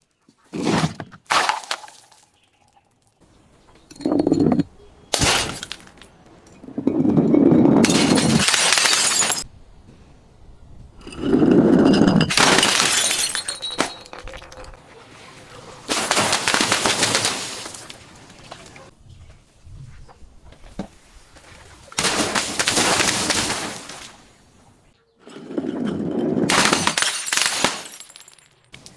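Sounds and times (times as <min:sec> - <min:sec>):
glass crunching and grinding: 0:01.4 - 0:09.5, 0:11.0 - 0:14.8, 0:25.3 - 0:28.9
glass bottles smashing: 0:03.9 - 0:09.5, 0:11.0 - 0:14.8, 0:15.9 - 0:17.9, 0:22.0 - 0:24.1, 0:26.4 - 0:28.7.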